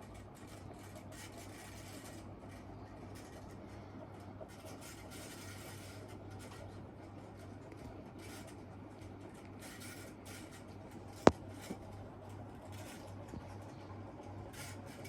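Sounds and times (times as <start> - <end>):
ceiling fan motor humming: 0.0 - 15.0.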